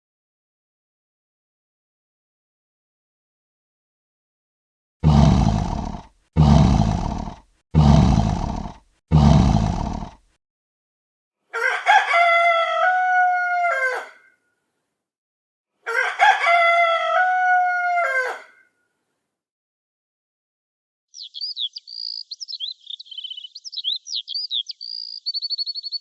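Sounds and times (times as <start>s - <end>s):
deep roars: 5.0s - 10.2s
rooster crowing: 11.5s - 14.3s, 15.9s - 18.7s.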